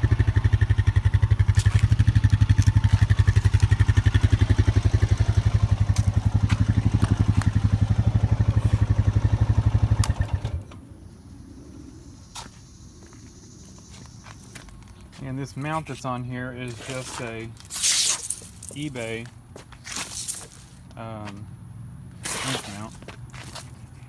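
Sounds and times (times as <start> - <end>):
atv engine idling: 0.0 - 17.7.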